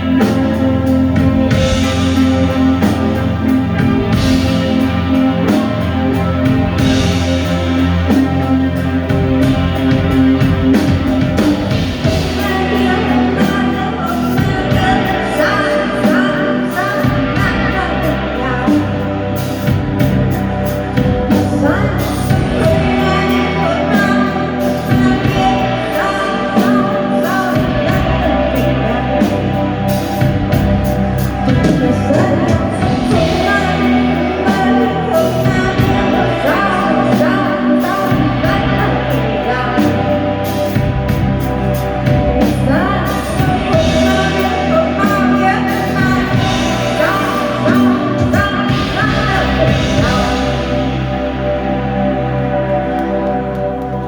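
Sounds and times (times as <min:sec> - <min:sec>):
person singing: 0:00.0 - 0:54.0
sustained bass notes: 0:00.0 - 0:54.0.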